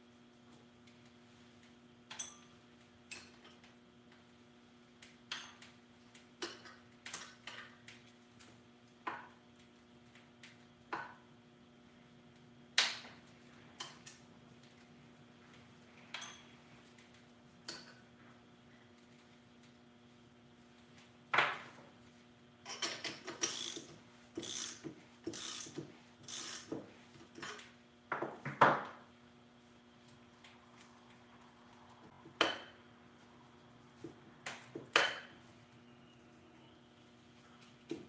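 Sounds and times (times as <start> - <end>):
faint steady hum: 0.0 - 38.0.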